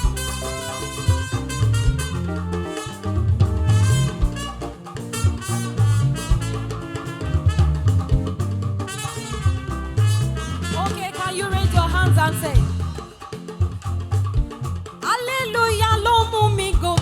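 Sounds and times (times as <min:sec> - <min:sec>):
heavy bass line: 0:00.0 - 0:10.9, 0:11.6 - 0:13.2
worship band playing: 0:00.0 - 0:15.0
drum kit beat: 0:00.0 - 0:17.0.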